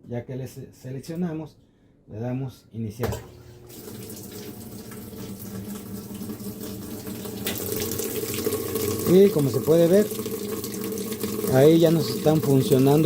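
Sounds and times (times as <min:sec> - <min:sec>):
water rushing into washing machine: 0:03.0 - 0:13.0.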